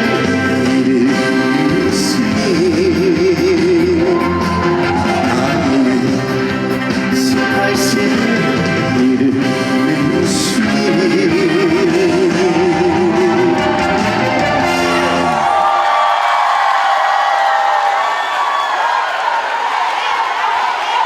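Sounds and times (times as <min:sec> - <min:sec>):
live band playing: 0:00.0 - 0:15.8.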